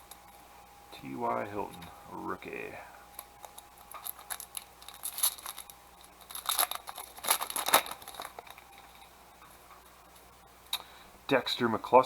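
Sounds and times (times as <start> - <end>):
wrapper crinkling and rustling: 3.2 - 9.1.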